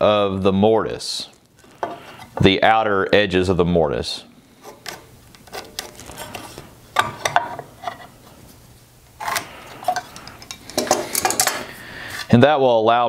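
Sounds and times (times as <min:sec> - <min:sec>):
hand tools clinking on timber: 0:09.9 - 0:11.6.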